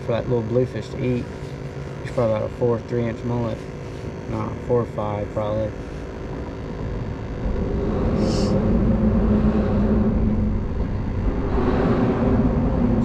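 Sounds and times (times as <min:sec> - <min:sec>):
traffic rumbling over bridge: 0:07.4 - 0:13.0.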